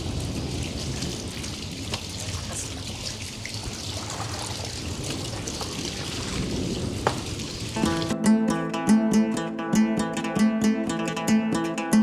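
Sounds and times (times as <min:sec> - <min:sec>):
drops ticking: 0:00.0 - 0:08.2
heavy rain: 0:00.0 - 0:08.2
water trickling and pouring: 0:00.0 - 0:08.2.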